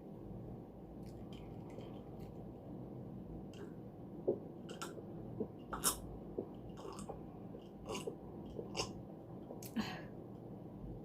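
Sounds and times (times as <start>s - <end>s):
close chewing of fried food: 5.8s - 9.0s.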